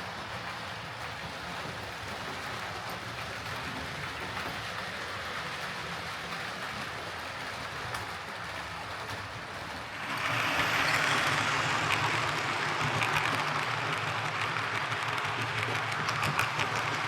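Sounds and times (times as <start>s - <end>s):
wheels clicking on rails: 0.0s - 17.0s
model train motor whirring: 9.8s - 17.0s.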